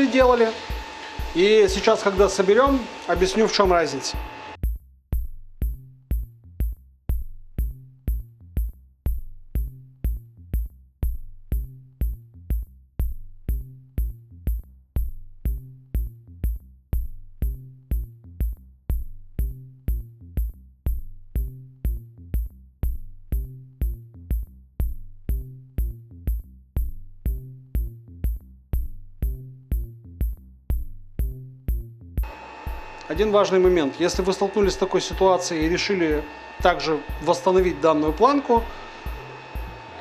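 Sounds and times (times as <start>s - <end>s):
electronic music: 0.0s - 4.6s, 31.2s - 40.0s
low bass line: 0.0s - 40.0s
drum machine kick: 0.2s - 40.0s.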